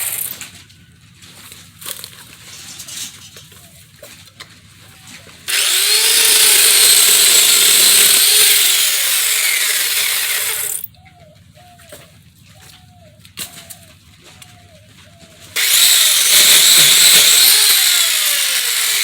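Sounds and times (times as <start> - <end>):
chainsaw cutting wood: 0.0 - 0.5, 5.5 - 10.9, 15.6 - 19.0
birds chirping: 10.8 - 15.6.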